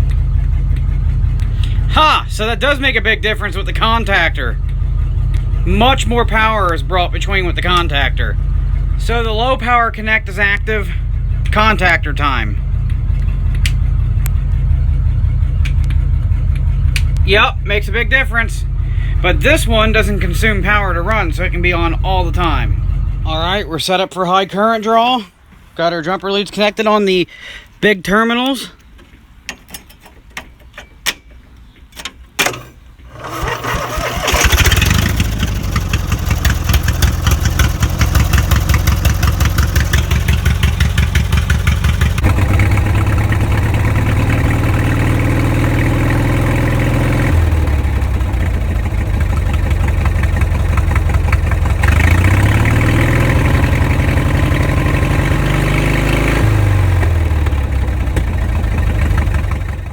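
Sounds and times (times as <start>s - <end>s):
truck engine cranking and revving: 0.0s - 23.9s, 28.4s - 59.9s
sharp clicks: 12.8s - 14.4s, 15.5s - 17.3s.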